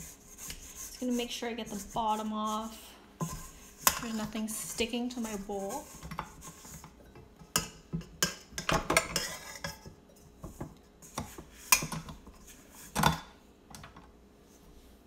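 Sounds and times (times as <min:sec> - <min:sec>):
spatula scraping a mixing bowl: 0:00.0 - 0:13.0.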